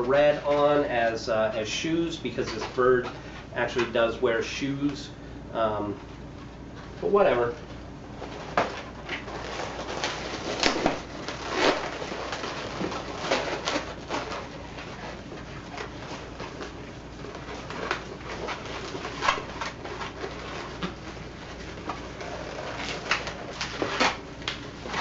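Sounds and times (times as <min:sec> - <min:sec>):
balloons squeaking and rubbing: 0:08.3 - 0:25.0.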